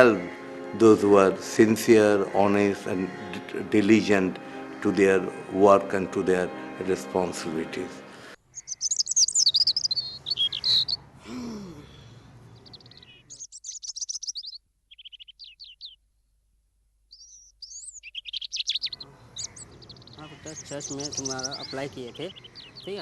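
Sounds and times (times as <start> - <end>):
small birds chirping: 8.4 - 16.1, 17.1 - 23.0.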